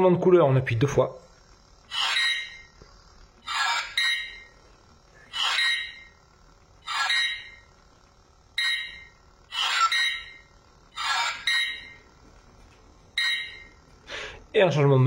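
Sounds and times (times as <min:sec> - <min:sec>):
toy electronic sound effects: 0:01.9 - 0:02.7, 0:03.4 - 0:04.5, 0:05.3 - 0:06.2, 0:06.8 - 0:07.7, 0:08.6 - 0:12.1, 0:13.2 - 0:13.8.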